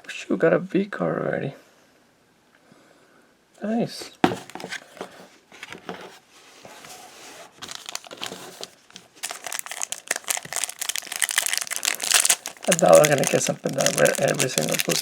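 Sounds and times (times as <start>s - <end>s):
foil wrapper crinkling: 7.6s - 15.0s.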